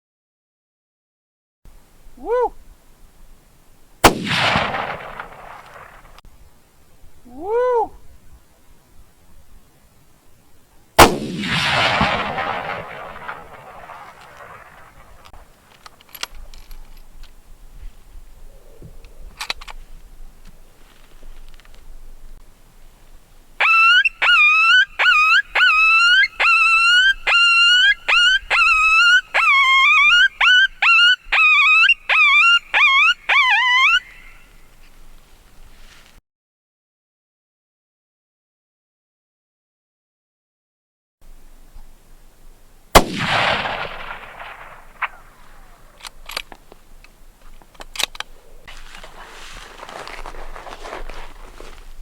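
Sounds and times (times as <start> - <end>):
rifle shot echoing: 4.0 - 6.2, 11.0 - 15.6, 42.9 - 46.4
coyote-like predator call whines: 23.6 - 34.5.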